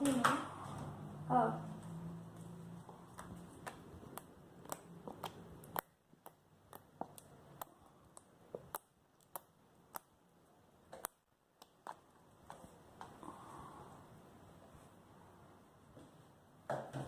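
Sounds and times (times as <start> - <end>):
slime squeezed popping and clicking: 3.6 - 12.6.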